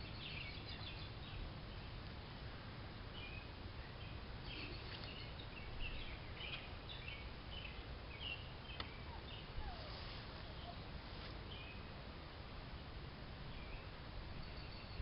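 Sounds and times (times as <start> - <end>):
small birds chirping: 0.0 - 2.1, 3.1 - 11.9
faint low rumble: 0.0 - 15.0.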